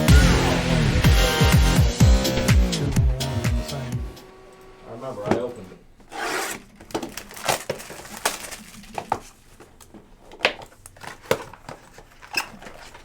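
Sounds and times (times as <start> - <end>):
plastic and paper crinkling: 6.5 - 13.0.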